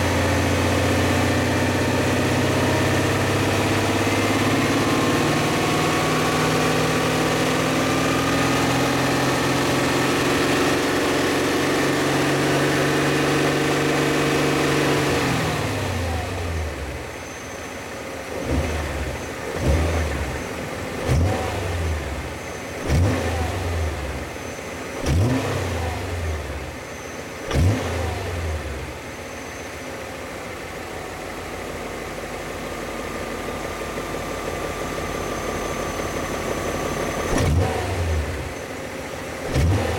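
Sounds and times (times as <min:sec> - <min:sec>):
car engine revving: 0:18.3 - 0:26.8, 0:27.4 - 0:29.0, 0:36.5 - 0:39.9.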